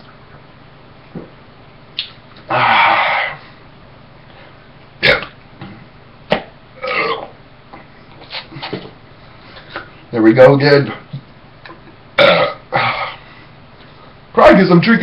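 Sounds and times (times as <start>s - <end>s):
man burping: 2.5s - 3.4s, 5.0s - 5.9s, 6.8s - 7.4s, 12.2s - 13.3s.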